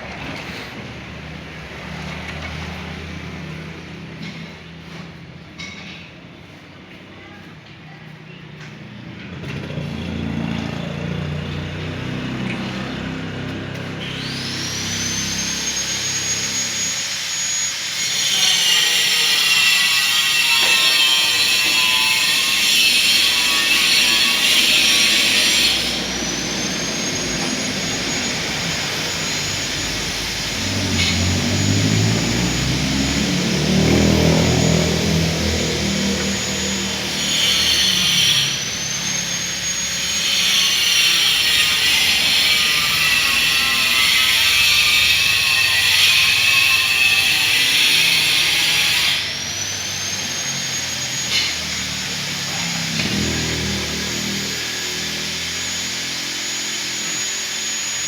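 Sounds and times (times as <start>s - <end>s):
power tool motor whine: 14.0s - 58.0s.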